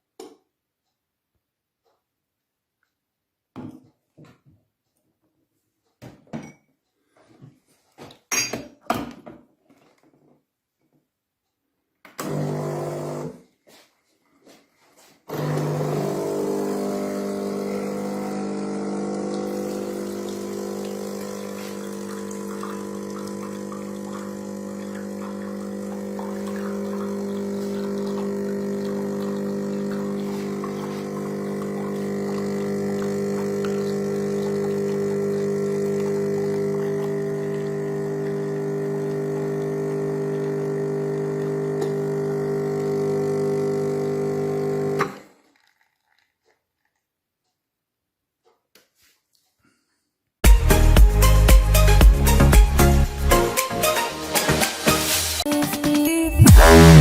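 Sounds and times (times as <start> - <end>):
coffee grinder motor humming: 12.2 - 13.4, 15.3 - 45.4.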